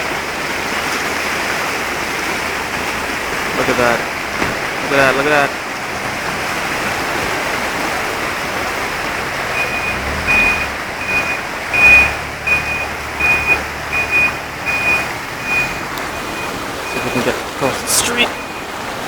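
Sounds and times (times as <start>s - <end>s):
low engine rumble: 0.0s - 19.0s
rushing water and rain: 0.0s - 19.0s
reversing alarm beeping: 9.4s - 18.8s.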